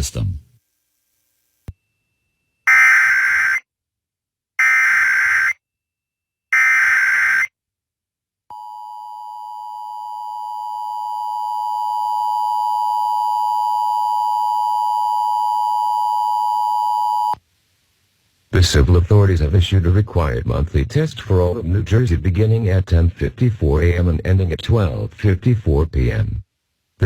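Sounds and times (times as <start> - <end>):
data tone bursts: 2.7 - 3.6, 4.6 - 5.6, 6.6 - 7.5
two-tone attention signal: 2.7 - 3.6.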